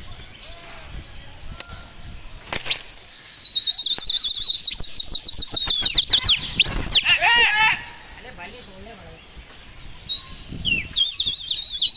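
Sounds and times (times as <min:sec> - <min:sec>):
shrill whistle trilling: 0:02.7 - 0:07.1, 0:10.1 - 0:11.9.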